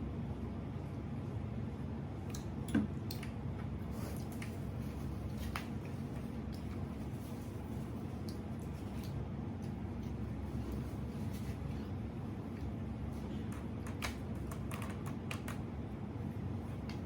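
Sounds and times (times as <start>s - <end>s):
low background hum: 0.0s - 17.0s
soft wet chewing: 4.1s - 13.7s.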